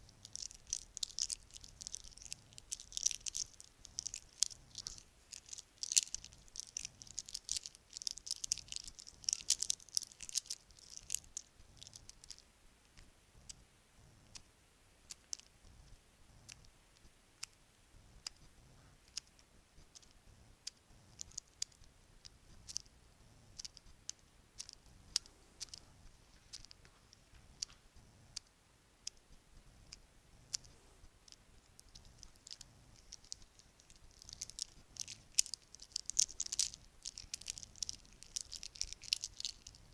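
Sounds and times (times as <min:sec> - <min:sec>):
bracelets clinking together: 0:33.2 - 0:39.8.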